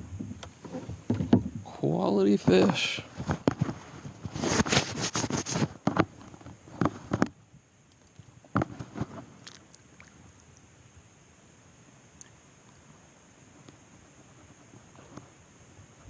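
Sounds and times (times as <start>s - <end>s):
handling clicks and scrapes: 2.4s - 7.4s.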